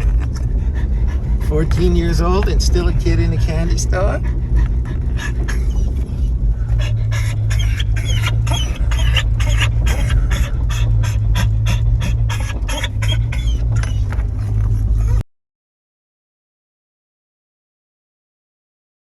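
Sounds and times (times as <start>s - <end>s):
dog panting: 0.0s - 15.2s
steady low drone: 0.0s - 15.2s.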